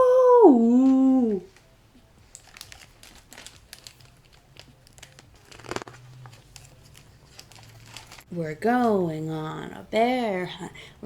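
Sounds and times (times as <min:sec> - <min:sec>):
book pages rustling: 0:01.5 - 0:09.0.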